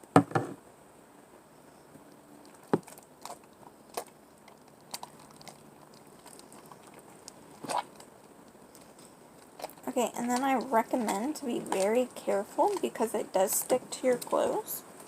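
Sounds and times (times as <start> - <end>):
sticky slime clicking and crackling: 2.4 - 14.4.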